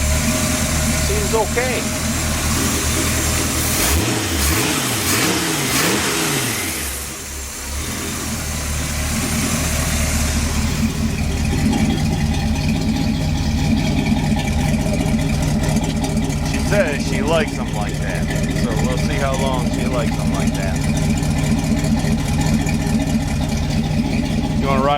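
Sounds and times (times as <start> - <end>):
engine revving and idling: 0.0 - 24.9.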